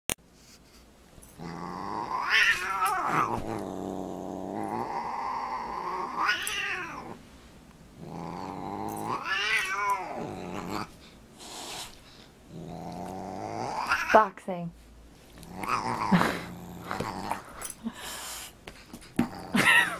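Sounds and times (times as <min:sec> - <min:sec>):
cat yowling and growling: 0:01.4 - 0:03.7, 0:04.4 - 0:07.2, 0:08.1 - 0:10.9, 0:13.0 - 0:14.2, 0:15.5 - 0:17.4.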